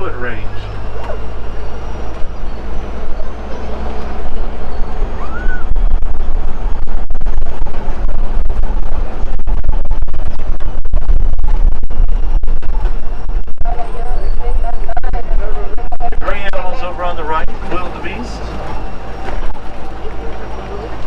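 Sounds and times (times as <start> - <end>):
truck engine rumble: 0.0 - 21.0.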